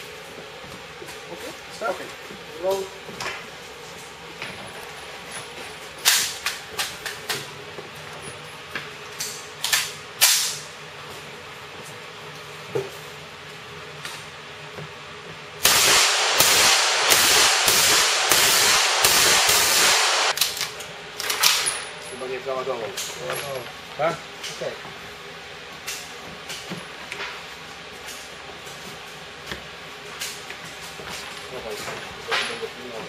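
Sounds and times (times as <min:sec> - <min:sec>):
full-automatic gunfire: 0:15.6 - 0:20.4
gunshots: 0:15.6 - 0:20.4.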